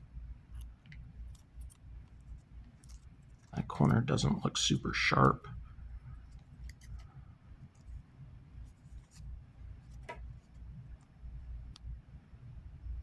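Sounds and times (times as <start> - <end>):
cards sliding and rubbing: 7.7 - 11.1.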